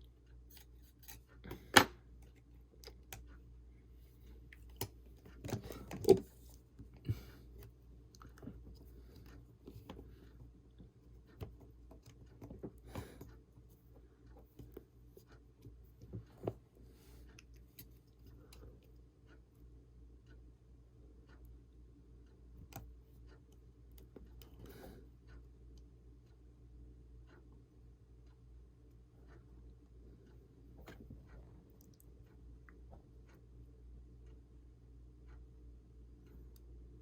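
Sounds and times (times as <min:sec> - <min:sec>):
faint low hum: 0:00.0 - 0:37.0
small clicks and taps of tools: 0:00.3 - 0:03.4, 0:10.8 - 0:13.4.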